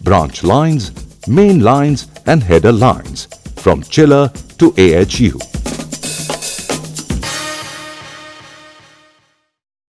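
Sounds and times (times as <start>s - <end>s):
background music final chord: 7.2s - 9.5s.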